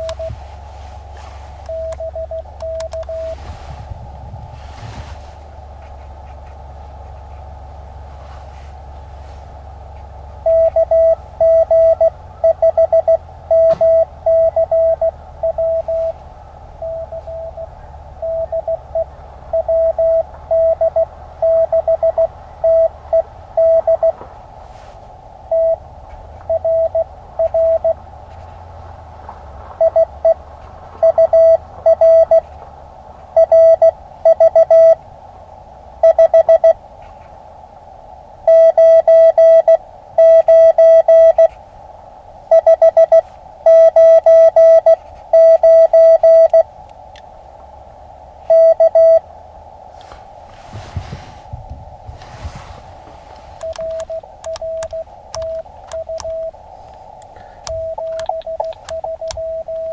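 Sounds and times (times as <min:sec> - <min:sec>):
morse code beeps: 0:00.0 - 0:00.4, 0:01.7 - 0:03.4, 0:10.4 - 0:16.2, 0:16.8 - 0:24.2, 0:25.5 - 0:25.8, 0:26.5 - 0:28.0, 0:29.8 - 0:30.4, 0:31.0 - 0:32.5, 0:33.4 - 0:35.0, 0:36.0 - 0:36.8, 0:38.5 - 0:41.6, 0:42.5 - 0:46.7, 0:48.5 - 0:49.3, 0:53.6 - 0:56.6, 0:57.3 - 0:59.9
radio band noise hiss: 0:02.4 - 0:10.4, 0:13.2 - 0:31.0, 0:49.2 - 0:59.9.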